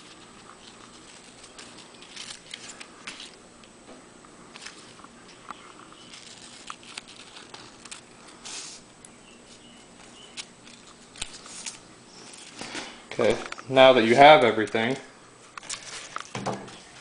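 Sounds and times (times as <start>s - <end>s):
paper sheet rustling: 0.0s - 3.4s, 5.7s - 8.8s, 9.4s - 13.4s, 15.6s - 17.0s
scissors snipping paper: 6.1s - 8.8s.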